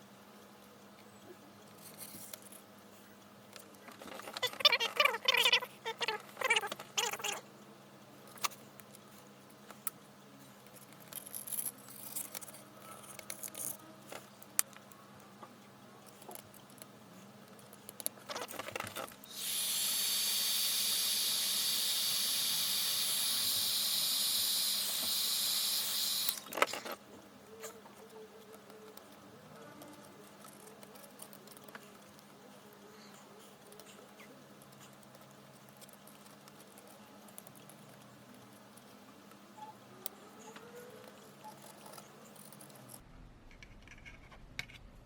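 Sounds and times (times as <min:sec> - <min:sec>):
hot air gun blowing: 0:19.3 - 0:26.4.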